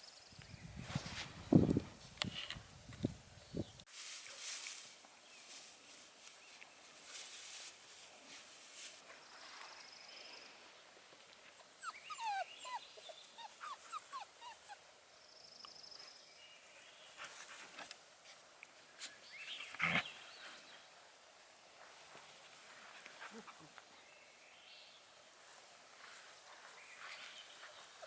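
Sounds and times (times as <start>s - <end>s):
puppies whining and yipping: 11.8s - 14.8s.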